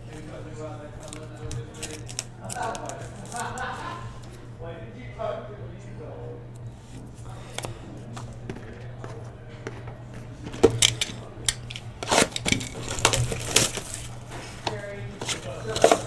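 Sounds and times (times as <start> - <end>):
cards and plastic packaging handled: 0.0 - 4.8, 6.4 - 16.0
steady low hum: 0.0 - 16.0.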